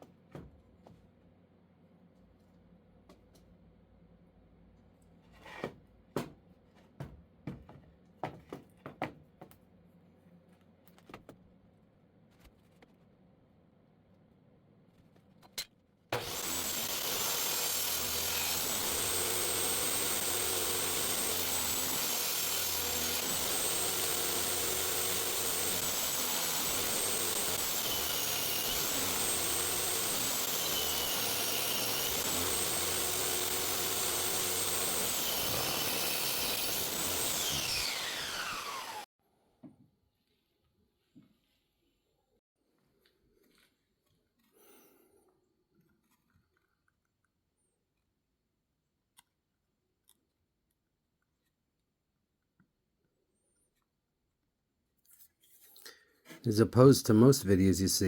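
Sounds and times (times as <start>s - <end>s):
power tool motor whining: 16.2s - 39.1s.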